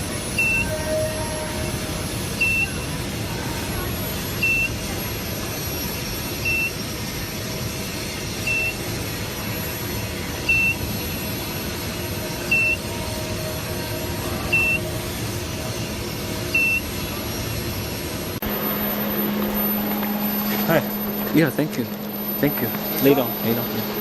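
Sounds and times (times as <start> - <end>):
machinery hum: 0.0 - 24.0
short high electronic beep: 18.4 - 24.0.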